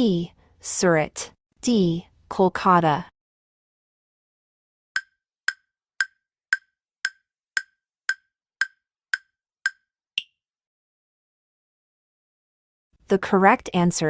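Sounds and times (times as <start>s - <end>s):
countdown timer ticks: 5.0s - 10.4s.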